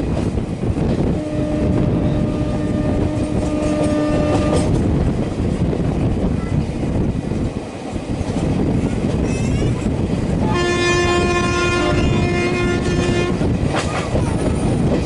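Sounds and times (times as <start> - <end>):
train rumble: 0.0 - 15.0
locomotive horn blast: 1.1 - 4.8, 10.4 - 13.5.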